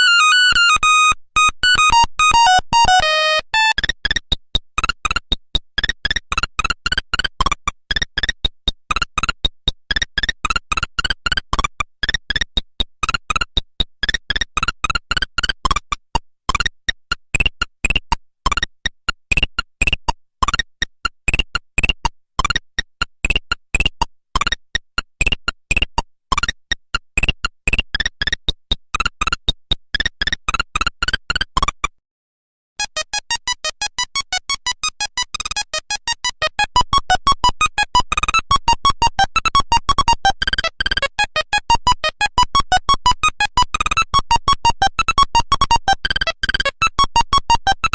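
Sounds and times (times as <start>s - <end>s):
monophonic beeping ringtone: 0.0s - 3.8s, 32.8s - 46.0s.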